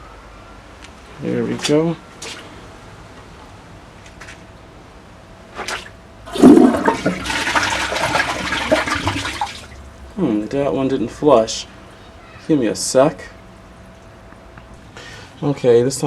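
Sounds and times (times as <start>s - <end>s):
toilet water rushing into bowl: 6.3s - 12.1s.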